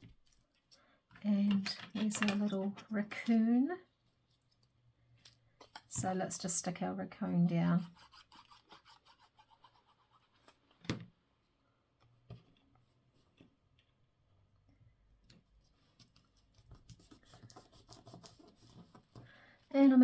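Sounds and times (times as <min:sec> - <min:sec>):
paper and card handled: 0:15.6 - 0:19.3.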